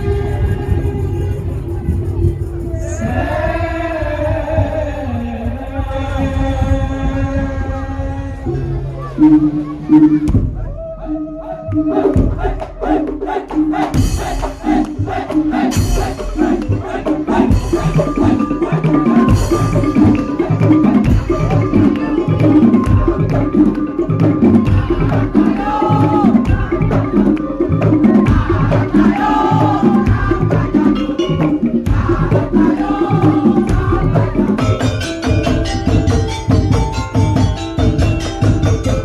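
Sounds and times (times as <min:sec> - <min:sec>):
sustained melody line: 0:06.0 - 0:39.0
wooden slit drums beating: 0:09.3 - 0:39.0.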